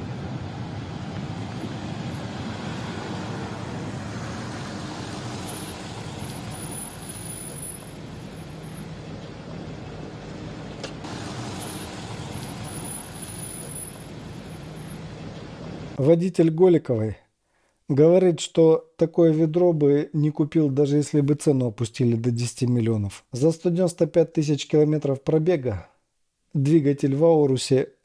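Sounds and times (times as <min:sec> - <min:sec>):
vehicle noise: 0:00.0 - 0:16.0
brake pads squeaking: 0:05.4 - 0:09.4, 0:10.8 - 0:15.5.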